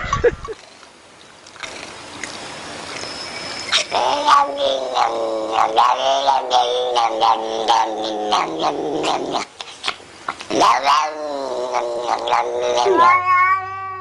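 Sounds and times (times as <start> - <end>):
cat caterwauling: 3.7 - 9.5, 10.5 - 14.0.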